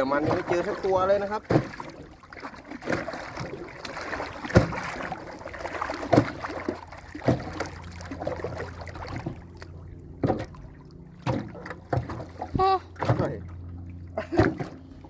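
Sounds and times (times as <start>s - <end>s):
water washing: 0.0s - 15.0s
wind: 0.0s - 15.0s
knocks against boat hull: 0.1s - 2.0s, 4.5s - 5.0s, 7.2s - 7.7s, 11.2s - 13.4s.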